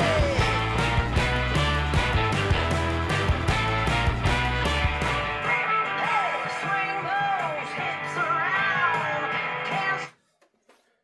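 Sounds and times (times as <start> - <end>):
person singing: 0.0 - 1.0, 5.4 - 10.2
guitar: 0.0 - 10.2
rock and roll song: 0.0 - 10.2.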